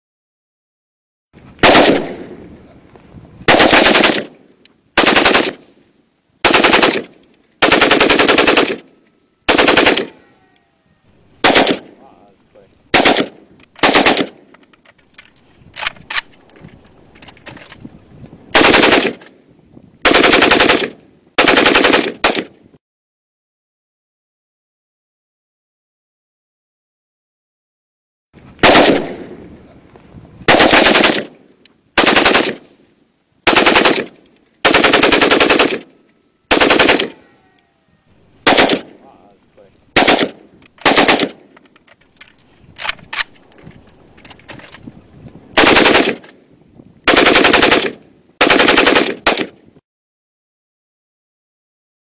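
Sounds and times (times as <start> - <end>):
assault rifle firing bursts: 1.6 - 2.2, 3.4 - 4.4, 5.0 - 5.7, 6.4 - 8.9, 9.5 - 10.2, 11.4 - 12.0, 12.9 - 14.5, 18.5 - 19.2, 20.0 - 22.5, 28.6 - 29.2, 30.5 - 31.4, 32.0 - 32.7, 33.4 - 35.9, 36.5 - 37.2, 38.4 - 39.0, 39.9 - 41.6, 45.6 - 46.4, 47.1 - 49.6
gunshot echo: 1.6 - 2.4.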